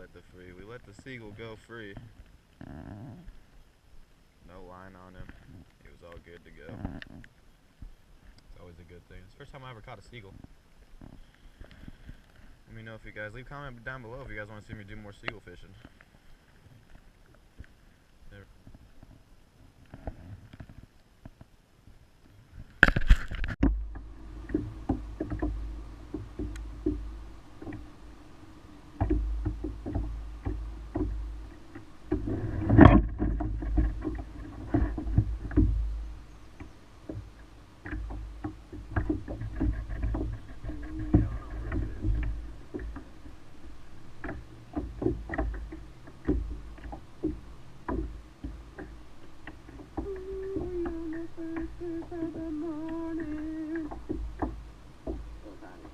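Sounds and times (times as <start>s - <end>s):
knocks and clicks against hull: 0.6s - 3.4s, 9.5s - 17.8s, 19.8s - 21.6s, 22.6s - 55.9s
low rumble: 23.4s - 55.9s.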